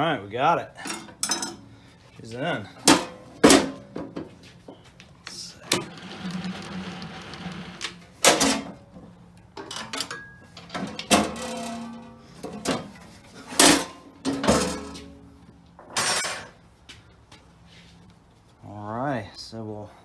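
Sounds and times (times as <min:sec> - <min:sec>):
metal parts clanking: 0:00.8 - 0:01.6, 0:08.2 - 0:08.8, 0:09.6 - 0:15.2, 0:15.9 - 0:16.6.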